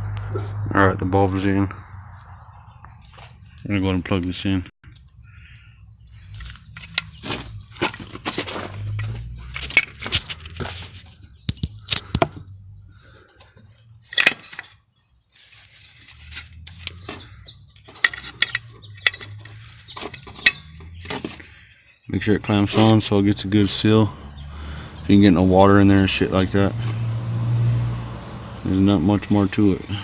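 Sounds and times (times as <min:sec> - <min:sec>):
knocks and rustling: 0:06.4 - 0:12.5, 0:15.6 - 0:21.5.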